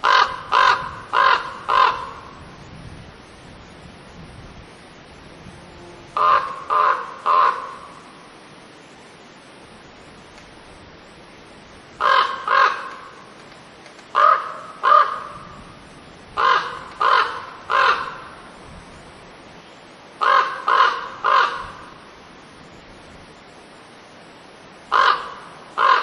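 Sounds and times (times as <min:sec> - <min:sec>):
raven cawing: 0:00.0 - 0:02.4, 0:06.1 - 0:08.0, 0:12.0 - 0:13.3, 0:14.1 - 0:15.8, 0:16.4 - 0:18.6, 0:20.2 - 0:22.0, 0:24.9 - 0:26.0.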